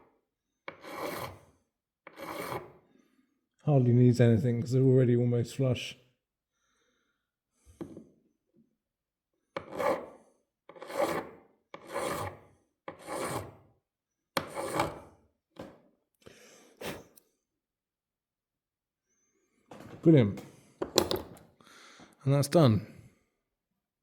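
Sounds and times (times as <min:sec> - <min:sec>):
hand file rasping on metal: 0:00.7 - 0:02.8, 0:09.6 - 0:13.6, 0:14.4 - 0:15.1.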